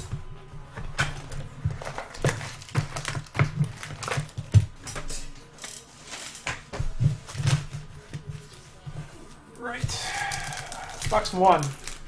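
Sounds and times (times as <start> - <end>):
packaging crinkling and tearing: 1.0 - 6.6, 10.0 - 12.0.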